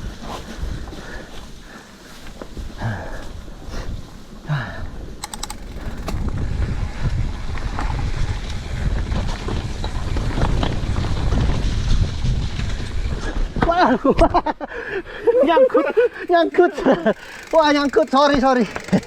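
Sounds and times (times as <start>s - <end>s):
bike rattles and knocks: 5.2s - 6.4s, 16.4s - 19.0s
bike tyre noise on dirt: 5.3s - 13.6s, 16.2s - 19.0s.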